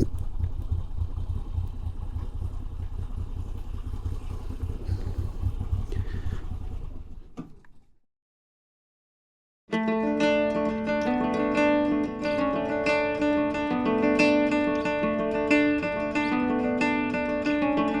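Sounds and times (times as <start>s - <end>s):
motorcycle engine throbbing: 0.0s - 7.2s.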